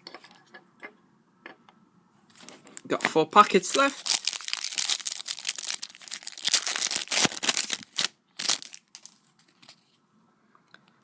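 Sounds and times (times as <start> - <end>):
foil wrapper crinkling and tearing: 3.0 - 9.8.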